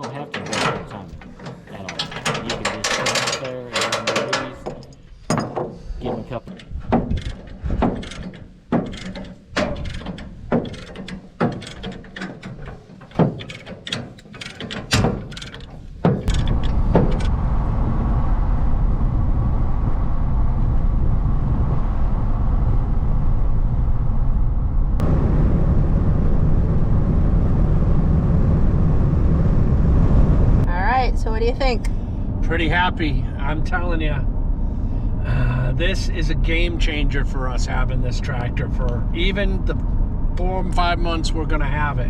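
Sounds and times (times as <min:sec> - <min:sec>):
sharp clicks and clanks: 0:00.0 - 0:17.3
vehicle running with road noise: 0:00.0 - 0:42.0.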